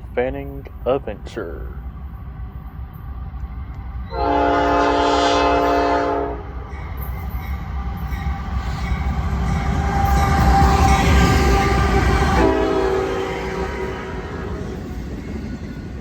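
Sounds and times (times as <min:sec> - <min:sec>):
train rumbling: 0:00.0 - 0:16.0
locomotive air horn: 0:04.1 - 0:06.6, 0:10.6 - 0:14.7.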